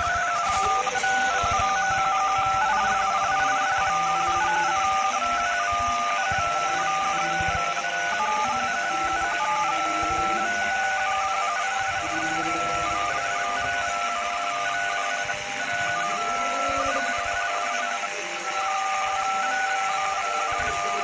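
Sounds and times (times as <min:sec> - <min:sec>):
electronic two-note alarm tones: 0:00.0 - 0:21.0.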